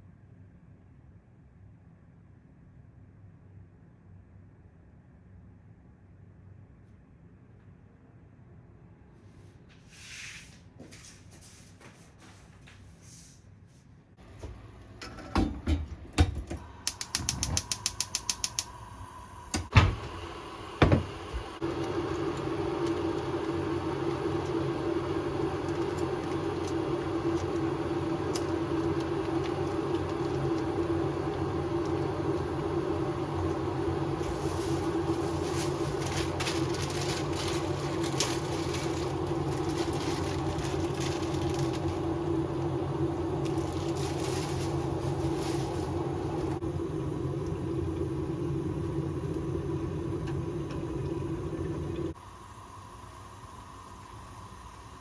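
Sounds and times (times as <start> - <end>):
steady mechanical hum: 0.0 - 55.0
quick clicks: 16.8 - 18.8.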